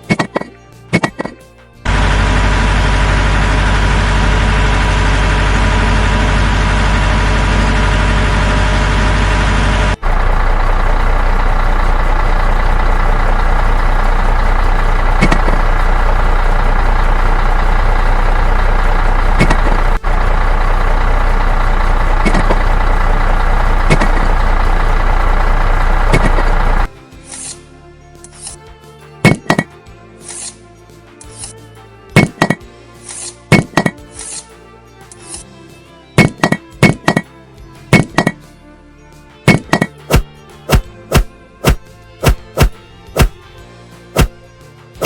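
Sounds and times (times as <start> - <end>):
heavy machine engine running: 1.9 - 27.0, 29.2 - 29.7, 32.2 - 32.6, 39.5 - 43.4, 44.2 - 44.4
sharp knocks: 39.5 - 43.4.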